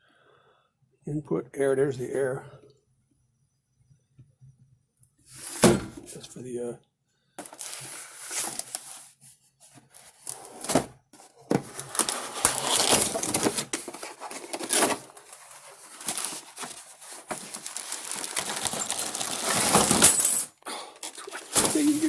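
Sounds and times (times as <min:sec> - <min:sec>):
packaging rustling and crinkling: 0:07.4 - 0:20.4, 0:21.0 - 0:22.0.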